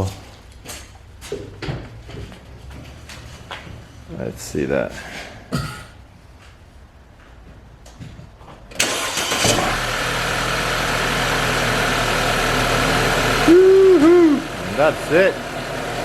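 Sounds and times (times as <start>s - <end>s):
car engine starting and idling: 8.7s - 16.0s.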